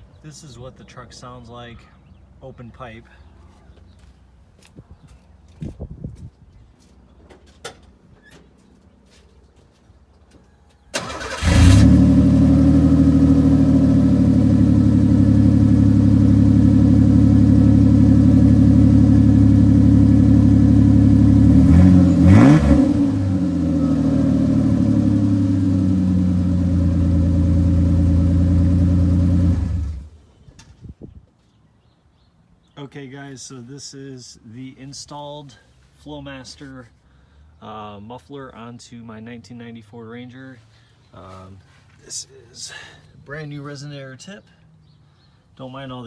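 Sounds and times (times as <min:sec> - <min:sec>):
car engine idling and revving: 0:11.2 - 0:30.2.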